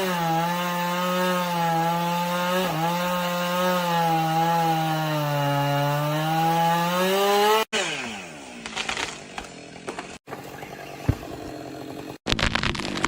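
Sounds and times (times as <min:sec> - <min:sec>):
chainsaw running at high revs: 0:00.0 - 0:12.2
chainsaw winding down: 0:03.1 - 0:12.2.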